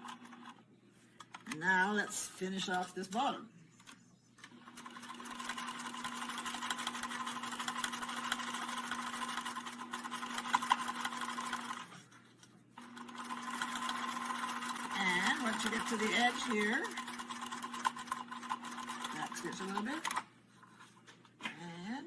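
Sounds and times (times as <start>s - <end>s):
sewing machine stitching: 4.4s - 12.0s, 12.8s - 20.2s.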